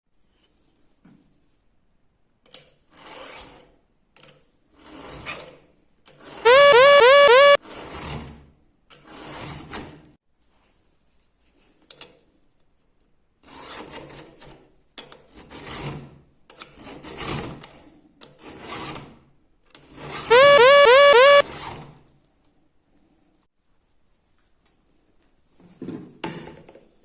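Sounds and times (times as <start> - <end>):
repeating rising tone: 6.5 - 7.6, 20.3 - 21.4.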